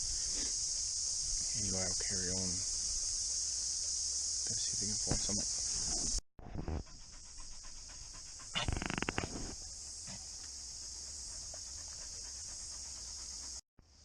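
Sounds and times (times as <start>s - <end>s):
cicadas droning: 0.0s - 14.0s
dog panting: 6.8s - 9.1s, 10.1s - 13.6s.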